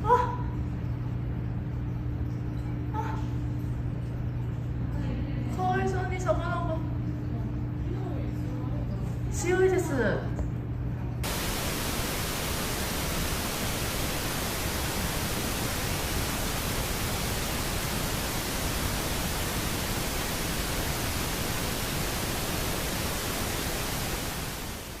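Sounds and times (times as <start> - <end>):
steady static hiss: 11.2 - 25.0.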